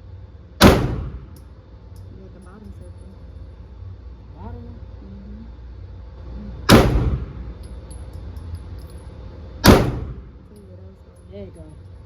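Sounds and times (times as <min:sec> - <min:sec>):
pistol shots: 0:00.6 - 0:01.4, 0:06.7 - 0:07.4, 0:09.6 - 0:10.4.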